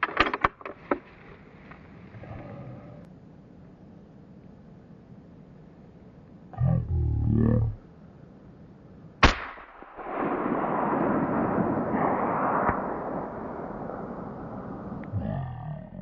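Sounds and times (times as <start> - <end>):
moose groaning: 2.1 - 3.1, 6.5 - 7.9, 15.0 - 16.0
rifle shot: 9.2 - 15.0.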